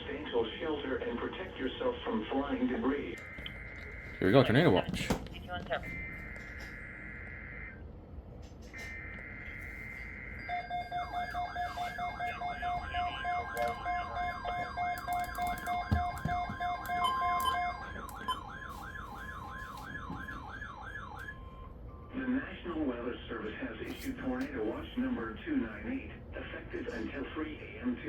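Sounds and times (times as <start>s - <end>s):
siren-like sweep alert: 3.2s - 4.8s, 5.8s - 7.8s, 8.7s - 22.1s
long steady alert tone: 3.2s - 5.1s, 5.8s - 7.9s, 8.8s - 22.1s
steady beeping tones: 3.2s - 7.9s, 8.7s - 19.0s.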